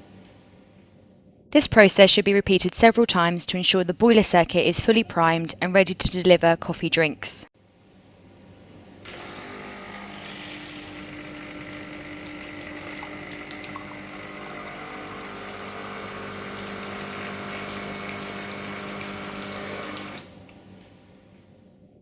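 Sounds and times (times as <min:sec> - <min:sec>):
espresso machine pump humming: 0:09.0 - 0:20.9.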